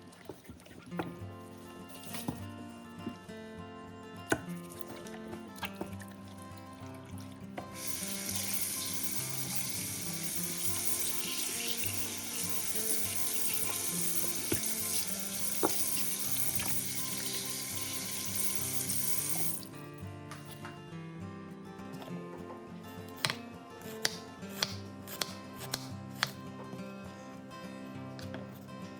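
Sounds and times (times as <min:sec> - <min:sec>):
background music: 0:00.0 - 0:28.9
kitchen tap running: 0:07.6 - 0:19.7.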